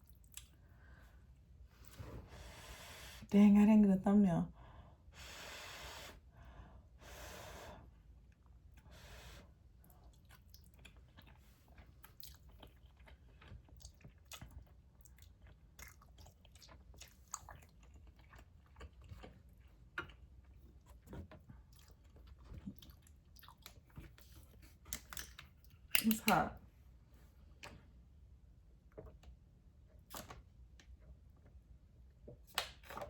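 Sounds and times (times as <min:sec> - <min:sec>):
person chewing noodles: 0:09.8 - 0:25.9.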